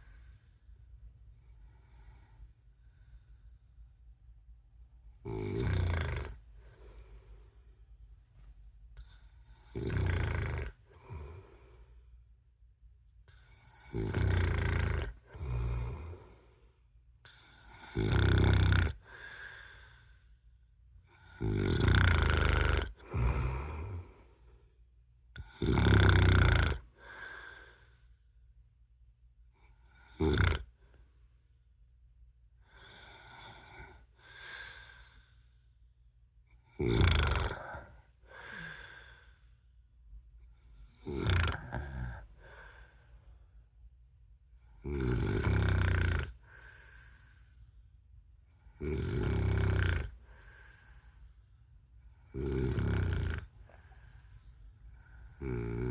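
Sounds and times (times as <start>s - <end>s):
man snoring: 5.2s - 6.5s, 9.5s - 11.6s, 13.6s - 16.4s, 17.3s - 19.8s, 21.1s - 24.2s, 25.4s - 27.8s, 29.9s - 30.7s, 32.8s - 35.2s, 36.7s - 39.4s, 40.8s - 43.0s, 44.6s - 47.2s, 48.7s - 51.2s, 52.1s - 54.0s, 54.9s - 55.9s.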